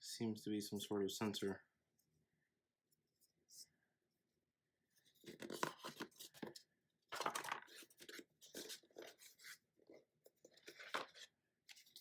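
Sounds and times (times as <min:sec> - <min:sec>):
cardboard and paper rustling: 0:05.0 - 0:12.0.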